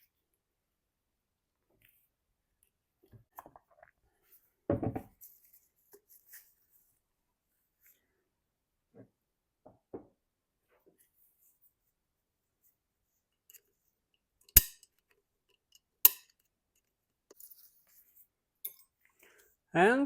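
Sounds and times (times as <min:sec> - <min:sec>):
metal tools knocking together: 0:16.1 - 0:16.4, 0:18.7 - 0:18.9.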